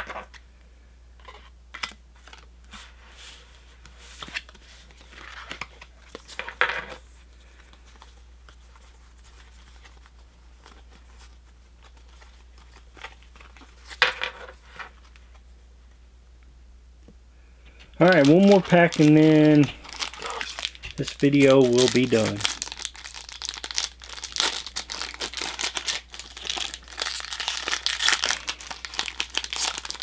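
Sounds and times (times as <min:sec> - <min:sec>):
foil wrapper crinkling: 0:17.7 - 0:30.0.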